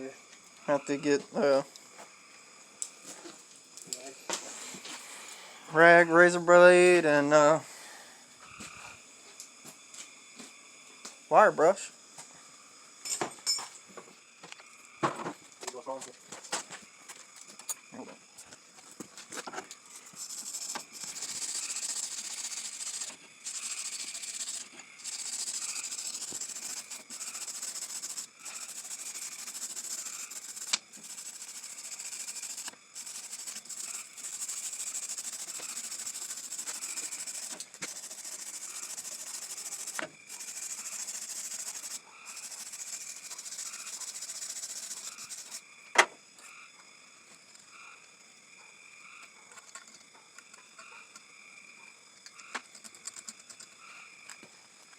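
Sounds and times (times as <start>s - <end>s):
wire brush scrubbing metal: 19.8s - 45.6s.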